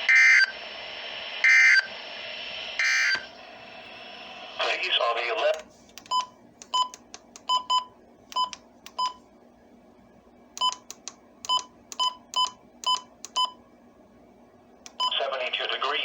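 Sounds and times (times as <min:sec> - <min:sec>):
electronic key beeps: 0:06.0 - 0:09.2, 0:10.6 - 0:13.6.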